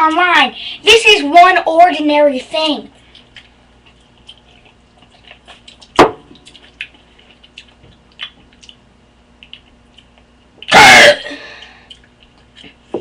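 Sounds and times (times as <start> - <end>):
wet mouth clicks and smacks: 3.1 - 10.7, 11.6 - 12.8.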